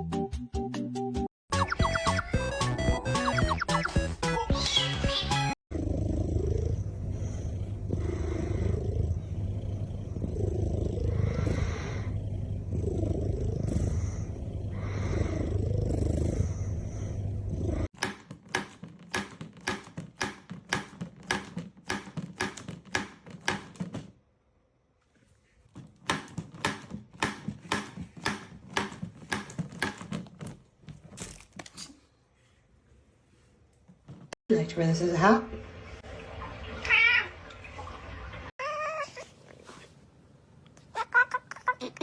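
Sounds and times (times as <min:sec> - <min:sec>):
cat purring: 0:05.7 - 0:17.9.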